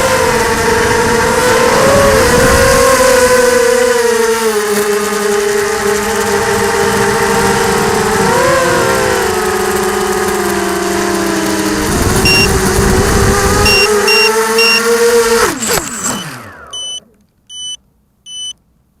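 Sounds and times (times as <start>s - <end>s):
drone motors whirring: 0.0s - 18.5s
high electronic beep: 12.2s - 12.5s, 13.6s - 14.9s, 15.9s - 18.6s
short high beeps: 12.2s - 12.5s, 13.6s - 14.9s, 15.7s - 18.6s.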